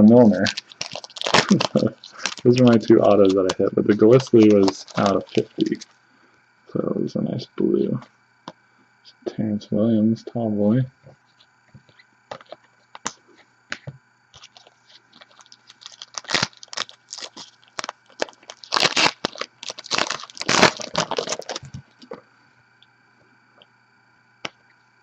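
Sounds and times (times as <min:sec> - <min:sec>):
foil wrapper tearing and crinkling: 0:00.2 - 0:05.9, 0:14.4 - 0:22.1.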